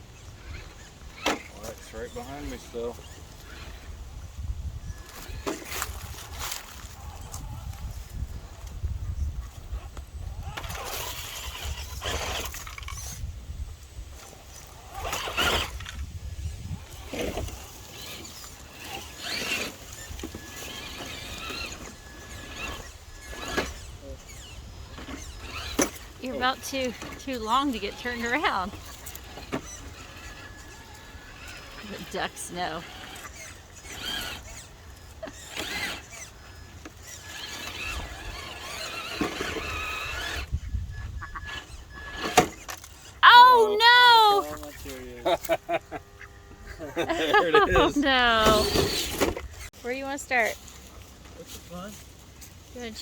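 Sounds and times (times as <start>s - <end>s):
electric motor whining: 14.5s - 49.7s.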